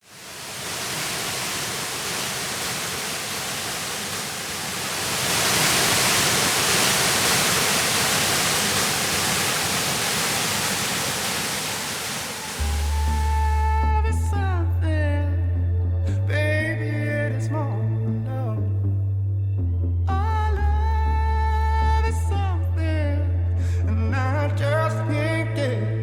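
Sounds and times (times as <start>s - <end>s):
waterfall rushing: 0.0s - 13.7s.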